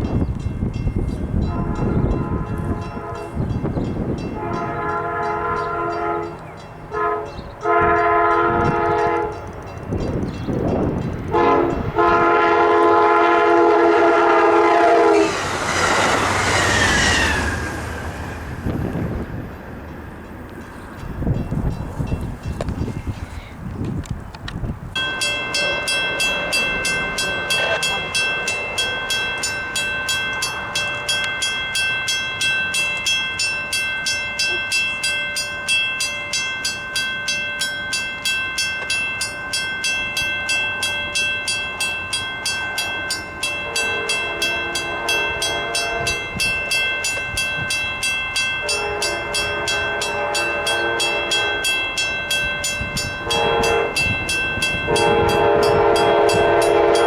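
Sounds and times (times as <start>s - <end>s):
crossing warning bell ringing: 0.0s - 57.0s
train horn blasts: 1.4s - 9.6s, 11.3s - 19.0s, 43.4s - 47.7s, 48.6s - 57.0s.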